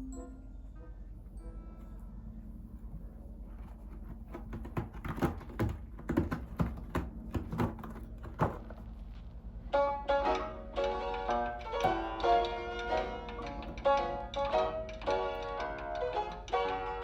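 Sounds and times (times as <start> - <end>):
music: 0.0 - 3.5, 9.6 - 17.0
pet claws scratching: 3.4 - 8.9.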